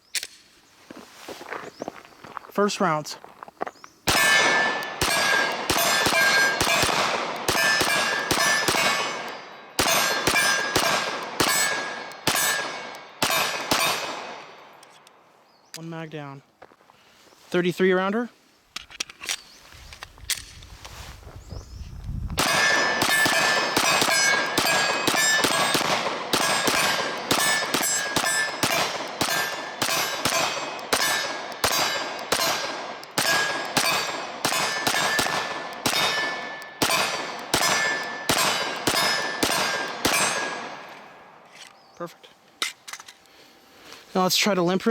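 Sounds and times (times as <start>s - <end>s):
pistol shots: 4.1s - 14.8s, 22.4s - 41.2s
ringing tone: 27.4s - 28.8s.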